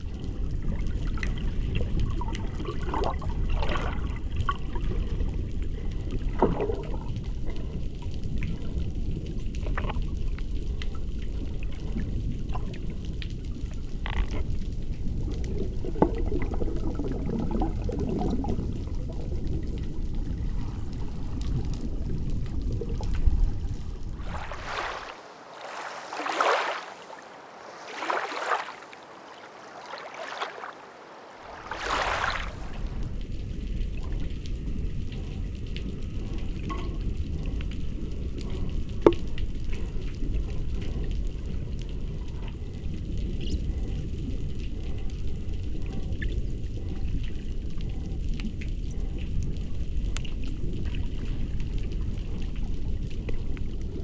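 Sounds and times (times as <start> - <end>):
water rushing: 24.2 - 33.1
water splashing: 24.2 - 33.1.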